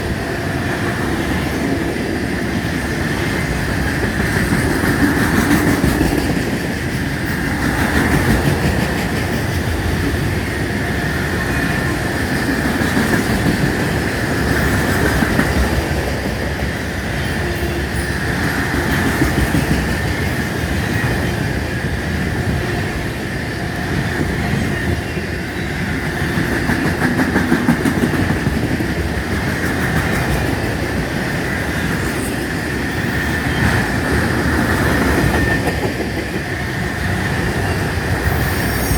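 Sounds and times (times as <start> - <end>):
freight train rolling past: 0.0 - 38.9
wheels clacking over rail joints: 0.0 - 38.9
high wheel squeal: 37.6 - 38.9.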